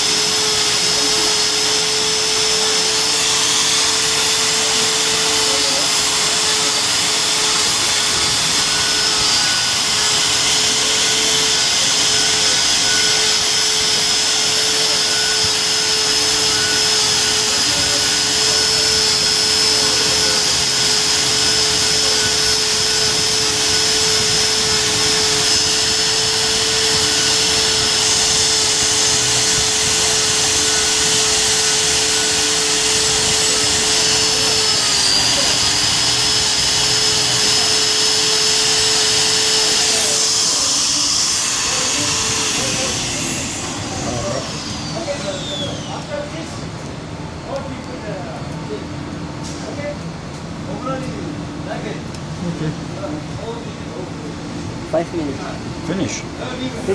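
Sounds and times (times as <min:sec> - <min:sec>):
grinding machine whining: 0:00.0 - 0:52.3.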